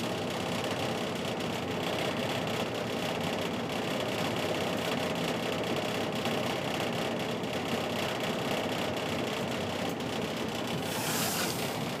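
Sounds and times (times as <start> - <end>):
furnace humming: 10.7 - 12.0
brief hiss: 10.8 - 11.8.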